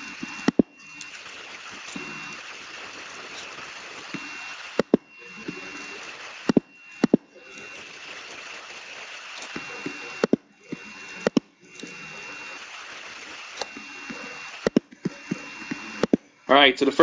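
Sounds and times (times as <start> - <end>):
sharp clicks: 0.0 - 2.4
steady hiss: 0.0 - 17.0
thin high whine: 0.0 - 17.0.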